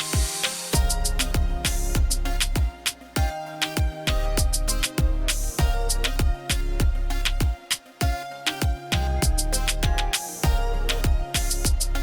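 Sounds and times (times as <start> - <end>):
cymbal wash: 0.0 - 3.3
music with fast kick drum beat: 0.0 - 12.0.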